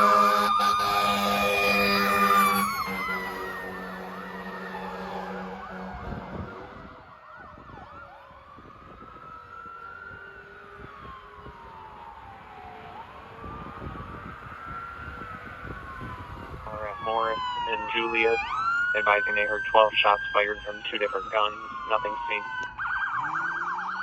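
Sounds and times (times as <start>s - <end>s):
fire engine air horn: 0.0s - 7.0s
siren winding down: 0.0s - 24.0s
wailing siren: 0.0s - 24.0s
yelping siren: 0.0s - 24.0s.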